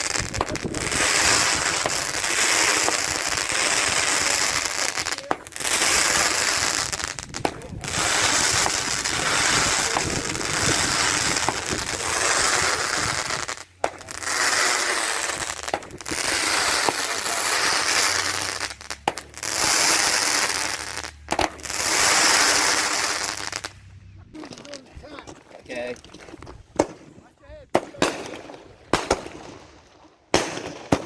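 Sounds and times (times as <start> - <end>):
fireworks hissing: 0.0 - 29.7
small fireworks pops: 0.0 - 31.0.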